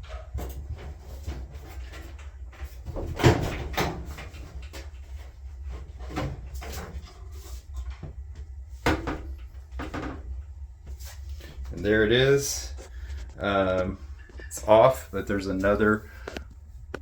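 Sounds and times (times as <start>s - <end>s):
sheet metal knocks and rattles: 0.0s - 4.8s.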